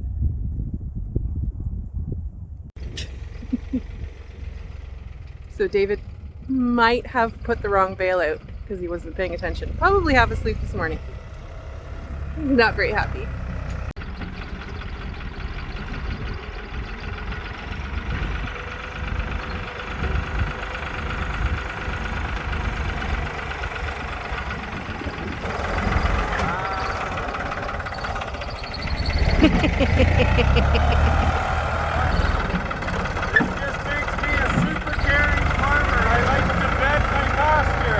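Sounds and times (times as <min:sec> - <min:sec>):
vehicle engine rumbling: 0:00.0 - 0:37.9
voice-like sounds: 0:26.2 - 0:28.3.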